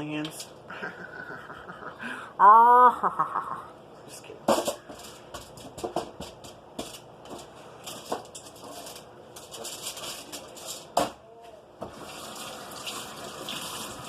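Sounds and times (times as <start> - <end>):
tap water running into sink: 11.8 - 14.0.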